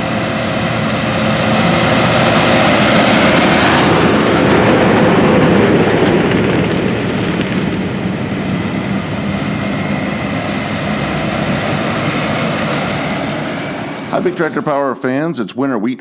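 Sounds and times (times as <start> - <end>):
heavy diesel engine running: 0.0 - 14.9
tyre and road noise: 1.5 - 14.5.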